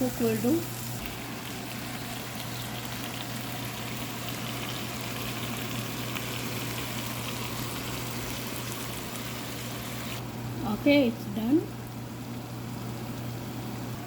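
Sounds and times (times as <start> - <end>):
chicken sizzling in oil: 0.0 - 10.2.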